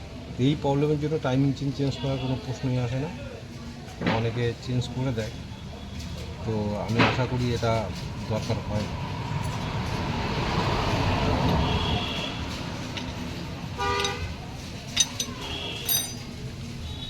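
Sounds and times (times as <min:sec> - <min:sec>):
vehicle passing: 0:08.9 - 0:16.1
vehicle horn toot: 0:11.6 - 0:12.4, 0:13.8 - 0:14.4.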